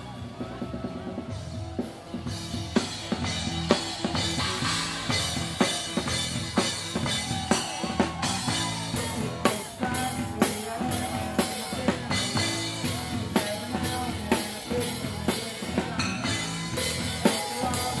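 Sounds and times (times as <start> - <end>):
drum kit beat: 0.0 - 18.0
rock music: 0.0 - 18.0.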